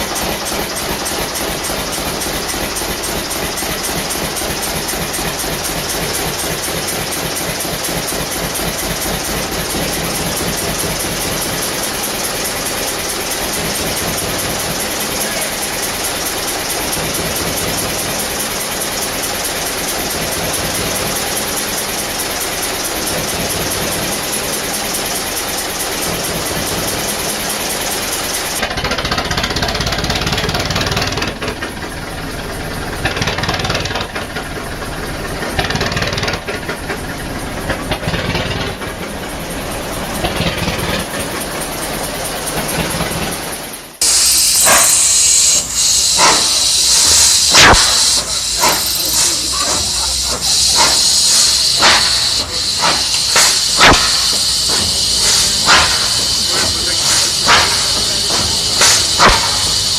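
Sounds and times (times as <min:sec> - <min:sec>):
large engines running: 0:00.0 - 0:59.9
loud hiss of steam or air: 0:44.0 - 0:59.9.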